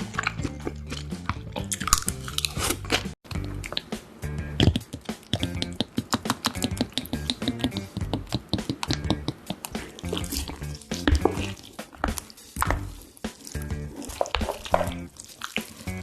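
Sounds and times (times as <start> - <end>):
background music with bass line: 0.0 - 5.9, 6.5 - 15.2, 15.8 - 16.0
wet chewing of noodles: 0.0 - 16.0.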